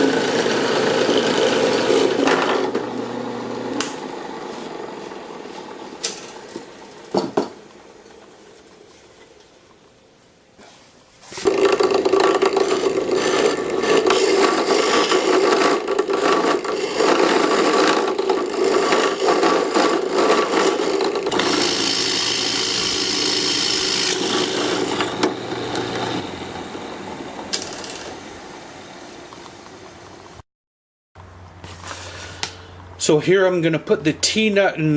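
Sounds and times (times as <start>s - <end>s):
tool rasping on wood: 0.0s - 2.9s, 11.4s - 26.3s
steady motor hum: 0.0s - 7.8s, 11.5s - 30.2s.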